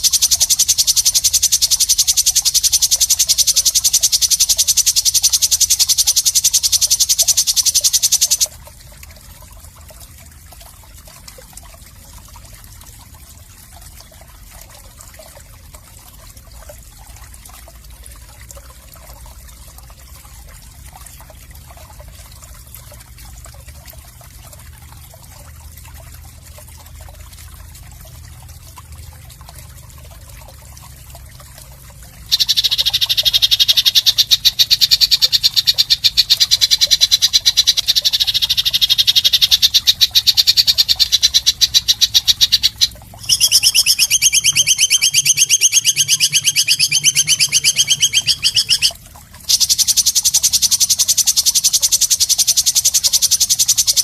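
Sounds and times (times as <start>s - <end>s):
rattling animal call: 32.3s - 48.9s, 49.5s - 54.0s.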